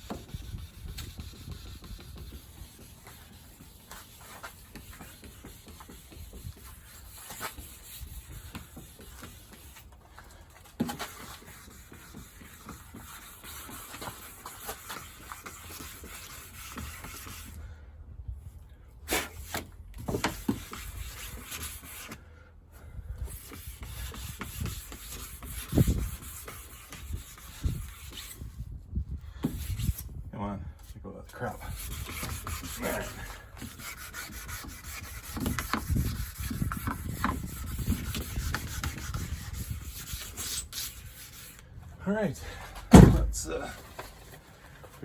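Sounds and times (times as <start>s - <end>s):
sandpaper rubbing on car paint: 0.0s - 17.6s, 19.1s - 22.2s, 23.3s - 28.8s, 29.4s - 30.2s, 31.3s - 41.8s
knocks: 42.9s - 43.4s.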